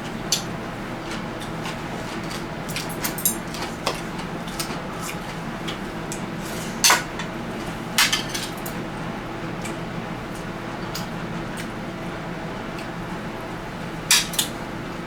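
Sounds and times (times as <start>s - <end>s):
utensils clinking against a dish: 6.5s - 7.4s, 8.0s - 8.8s, 14.1s - 14.5s.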